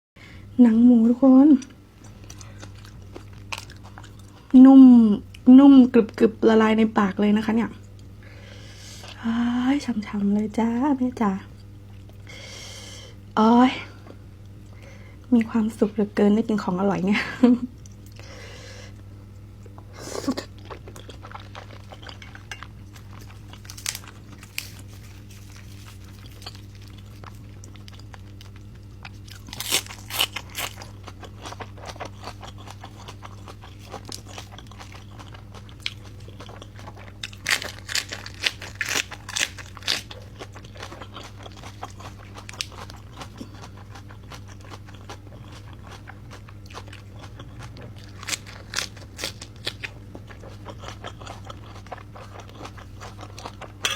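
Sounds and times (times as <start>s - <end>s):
person chewing: 2.0s - 4.5s, 18.9s - 53.9s.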